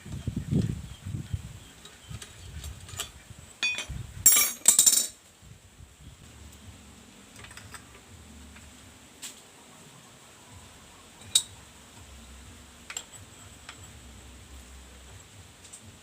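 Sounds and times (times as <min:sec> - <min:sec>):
small metal parts clinking: 0:02.9 - 0:05.2, 0:11.2 - 0:11.6.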